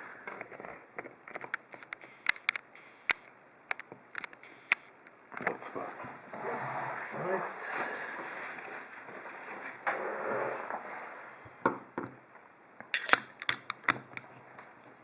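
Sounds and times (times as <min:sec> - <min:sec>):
sharp small clicks and taps: 0:00.3 - 0:05.6
padlock and tools handled on bench: 0:12.9 - 0:14.2.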